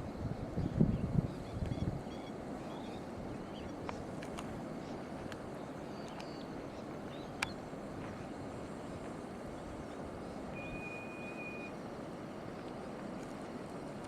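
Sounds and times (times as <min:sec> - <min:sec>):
thin high tone: 0:10.5 - 0:11.8.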